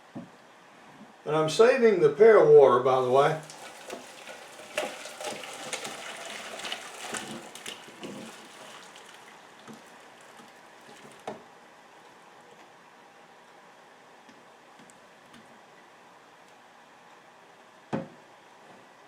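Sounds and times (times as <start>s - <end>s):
water pouring and splashing: 3.0s - 11.4s.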